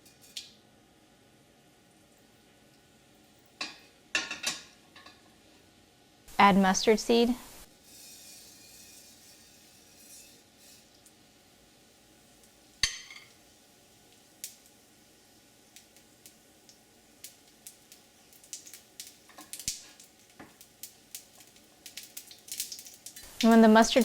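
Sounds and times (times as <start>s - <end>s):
seeds popping and crackling in oil: 14.1s - 14.8s, 15.7s - 24.0s.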